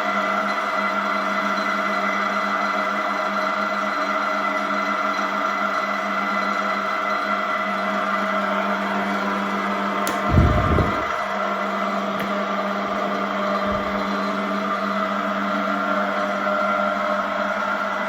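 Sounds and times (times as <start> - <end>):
milling machine motor whine: 5.9 - 11.6, 12.2 - 18.0
click: 10.0 - 10.3
short low thump: 10.3 - 11.2.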